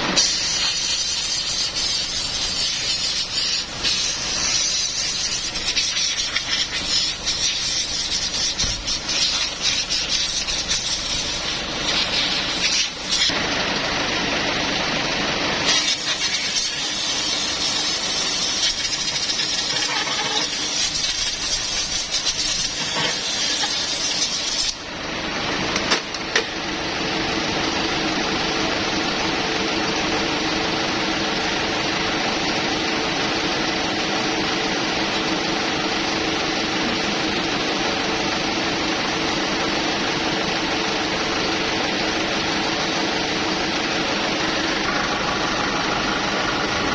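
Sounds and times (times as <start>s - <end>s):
loud hissing spray with rattle: 0.0s - 13.4s, 15.6s - 24.8s
machine hum: 41.0s - 46.9s.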